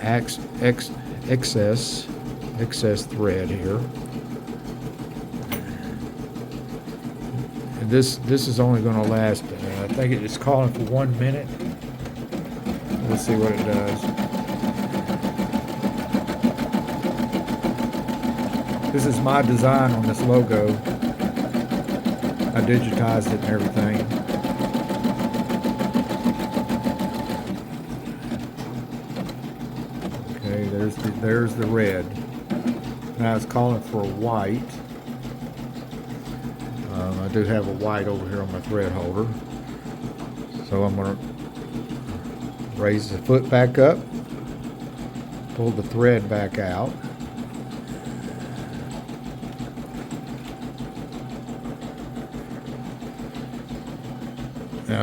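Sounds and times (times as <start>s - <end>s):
embroidery machine stitching: 0.0s - 55.0s
steady machine whine: 5.3s - 35.1s.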